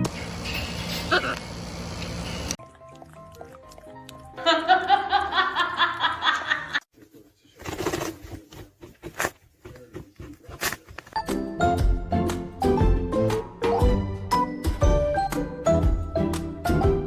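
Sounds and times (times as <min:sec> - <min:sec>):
loud pulsing laughter: 0:04.4 - 0:06.8
background music: 0:11.2 - 0:17.0.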